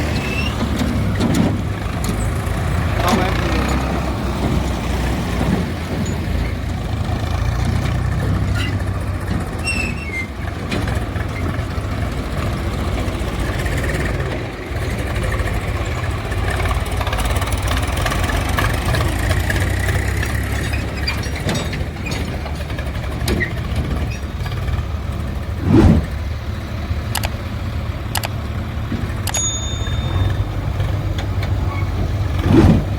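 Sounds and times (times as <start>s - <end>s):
diesel engine running at low revs: 0.0s - 32.9s
loud thump: 25.6s - 26.2s, 32.4s - 32.9s.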